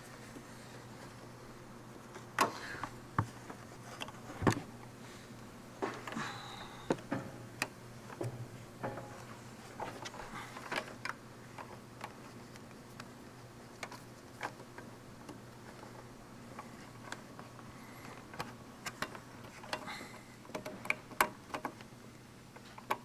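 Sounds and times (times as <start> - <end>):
faint steady hum: 0.0 - 23.0
clicks from plastic wiring parts: 6.9 - 21.9, 22.5 - 23.0.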